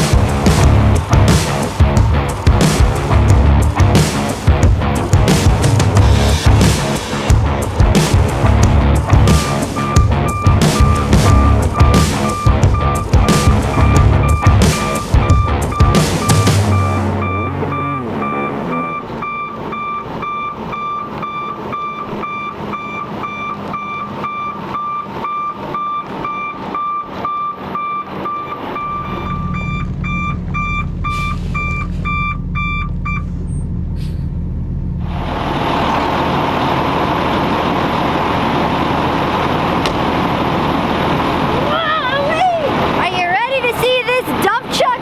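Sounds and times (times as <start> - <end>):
loud steady rushing noise: 0.0 - 18.3, 35.0 - 45.0
truck backup alarm beeping: 0.0 - 34.2, 35.0 - 45.0
truck engine: 0.0 - 45.0.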